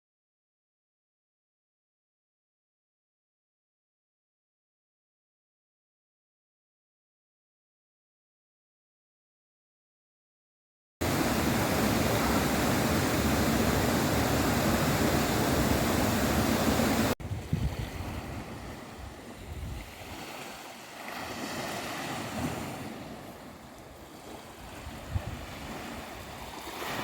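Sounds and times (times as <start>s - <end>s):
wind noise: 11.0s - 20.6s, 22.1s - 27.0s
sea surf: 11.0s - 27.0s
waves washing in and out: 11.0s - 27.0s.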